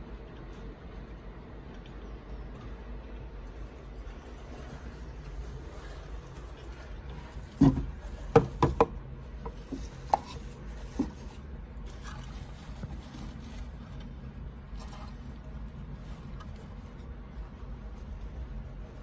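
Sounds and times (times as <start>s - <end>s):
low steady hum: 0.0s - 19.0s
sharp knocks and taps: 7.6s - 10.3s.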